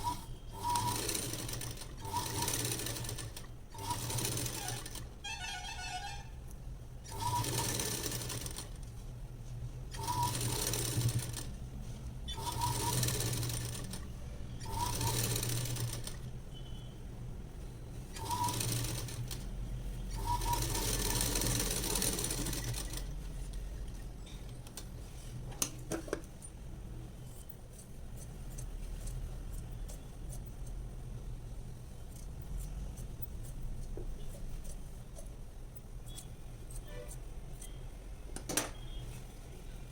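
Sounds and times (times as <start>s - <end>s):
sewing machine stitching fabric: 0.0s - 6.2s, 7.1s - 8.8s, 9.9s - 11.5s, 12.3s - 14.0s, 14.6s - 16.3s, 18.2s - 19.5s, 20.1s - 23.2s.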